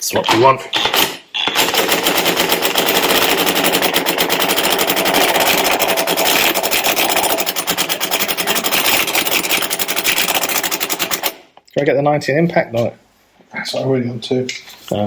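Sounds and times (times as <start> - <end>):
impact wrench hammering: 0.3 - 11.5.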